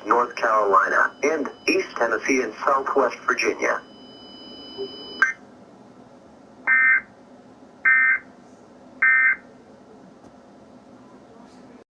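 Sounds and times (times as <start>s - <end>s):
buzzing digital data tones: 0.0s - 5.4s.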